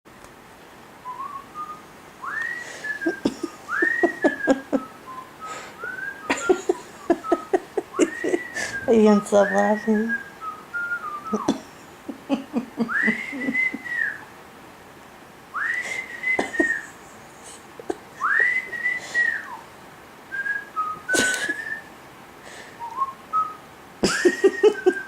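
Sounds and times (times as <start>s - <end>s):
whistled notes: 1.0s - 11.6s, 12.9s - 14.3s, 15.6s - 17.0s, 18.2s - 19.7s, 20.3s - 21.9s, 22.8s - 23.6s.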